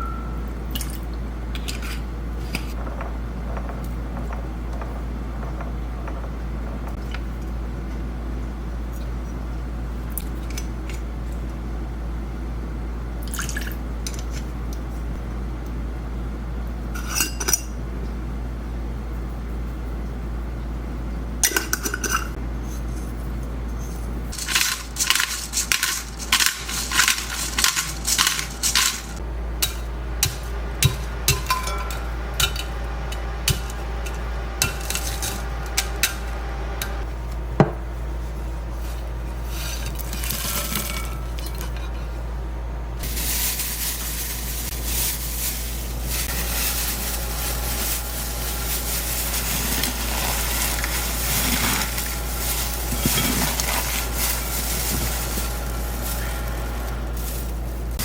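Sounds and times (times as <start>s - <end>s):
steady low hum: 0.0s - 58.0s
utensils clinking against dishes: 17.0s - 17.8s, 21.4s - 36.2s, 39.5s - 42.1s, 43.0s - 57.6s.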